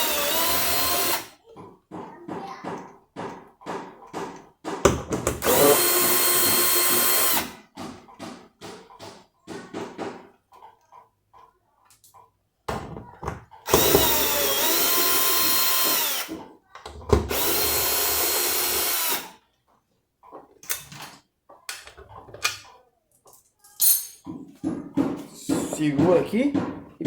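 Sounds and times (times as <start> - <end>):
drill motor whine: 0.0 - 1.2, 5.4 - 7.5, 13.7 - 16.3, 17.3 - 19.3
tools clattering: 21.7 - 24.6.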